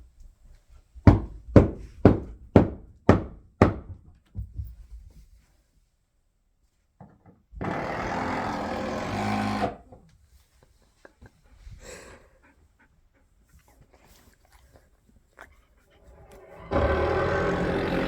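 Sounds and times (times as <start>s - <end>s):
power tool running: 16.3s - 18.0s.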